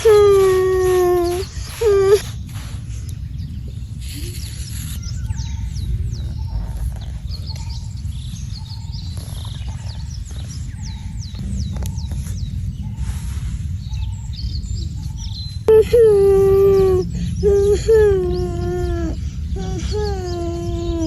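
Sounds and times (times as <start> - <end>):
birds whistling: 0.0 - 21.0
steady low rumble: 0.8 - 21.0.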